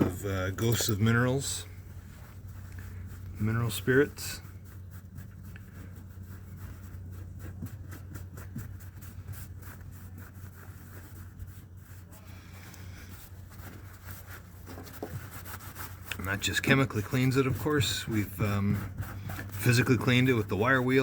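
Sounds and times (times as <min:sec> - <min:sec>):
steady low hum: 0:00.0 - 0:21.0
rag scrubbing metal: 0:13.9 - 0:21.0.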